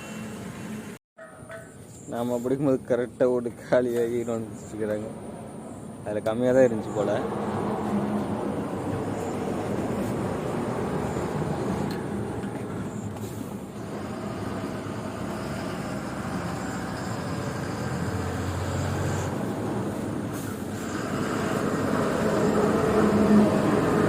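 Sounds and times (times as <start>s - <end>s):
lorry engine and road rumble: 2.7s - 24.0s.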